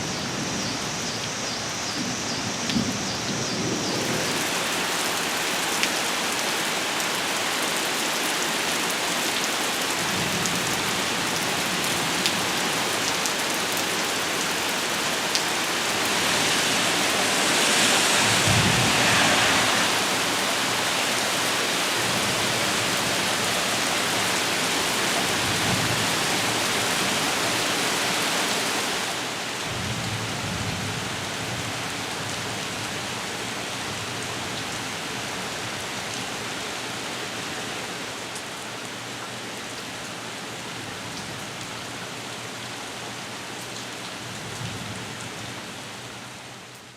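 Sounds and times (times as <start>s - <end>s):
heavy rain falling: 0.0s - 46.9s
thunder rumbling: 13.8s - 23.5s.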